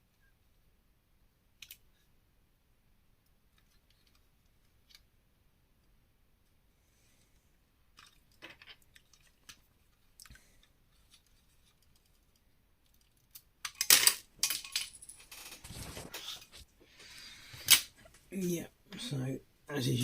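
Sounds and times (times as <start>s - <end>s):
plastic bricks clicking and snapping: 1.6s - 1.8s, 11.1s - 14.9s
loose plastic pieces clattering: 12.9s - 16.4s.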